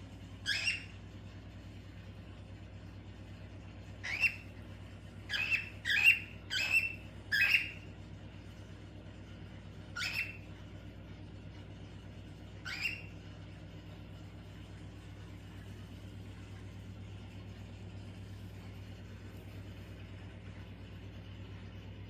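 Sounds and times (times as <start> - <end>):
cockatiel shrill calls: 0.4 - 0.9, 4.0 - 4.5, 5.3 - 7.8, 9.9 - 10.4, 12.6 - 13.1.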